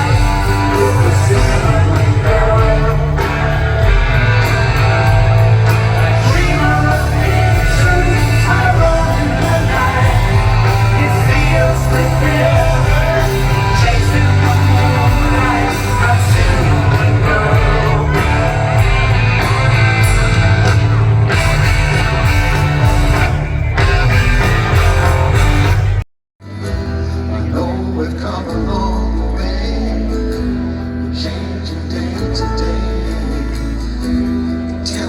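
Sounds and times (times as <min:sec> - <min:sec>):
person singing: 0:00.0 - 0:19.7
rock band playing: 0:00.0 - 0:35.0.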